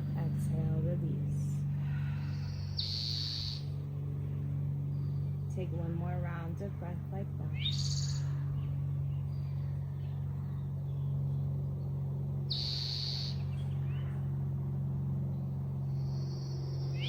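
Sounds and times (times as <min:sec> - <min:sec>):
birds calling: 0:00.0 - 0:17.0
steady low hum: 0:00.0 - 0:17.0
bright buzzy bird call: 0:02.1 - 0:04.0, 0:07.5 - 0:14.3, 0:15.3 - 0:17.0.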